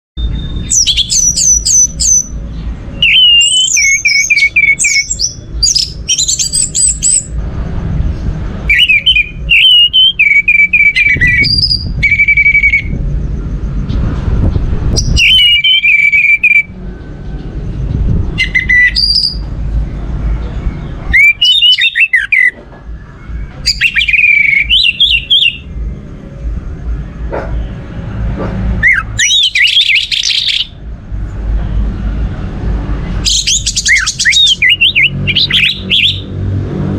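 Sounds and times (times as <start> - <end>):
thrush singing whistles and trills: 0.2 - 7.4, 8.6 - 13.8, 14.4 - 17.1, 18.2 - 19.6, 20.5 - 25.9, 28.6 - 30.8, 33.0 - 36.4
low rumble: 11.2 - 15.4.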